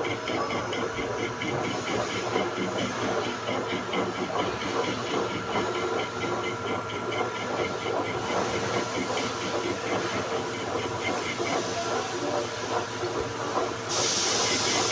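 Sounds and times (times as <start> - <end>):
lathe machine hum: 0.0 - 14.9
hiss: 13.8 - 14.9.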